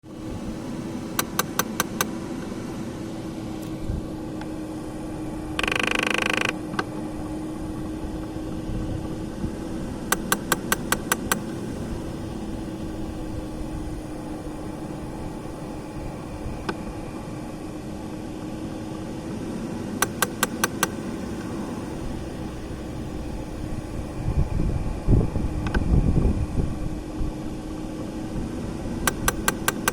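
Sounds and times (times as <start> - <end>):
steady hum: 0.0 - 29.9
flap motor clicking: 1.0 - 2.5, 5.5 - 8.4, 10.0 - 16.8, 20.0 - 24.2, 29.0 - 29.9
brief tone: 5.6 - 6.7.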